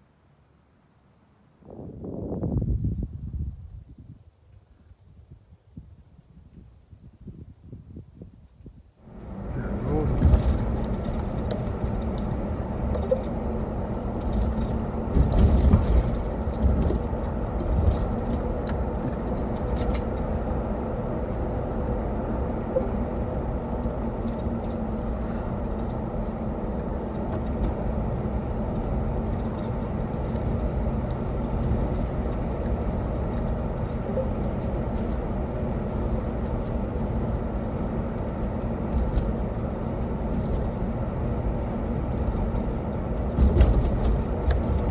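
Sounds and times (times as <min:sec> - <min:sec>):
car road and engine rumble: 0:00.0 - 0:04.1, 0:08.6 - 0:44.9
car bumps: 0:12.9 - 0:19.8.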